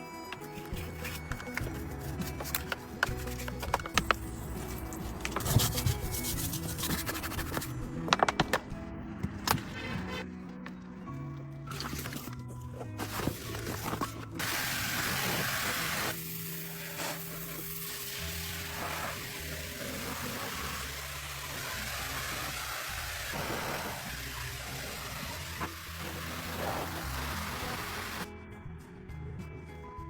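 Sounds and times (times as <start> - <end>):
low background music: 0.0 - 30.0
cleaning tool spraying hiss: 14.4 - 28.2.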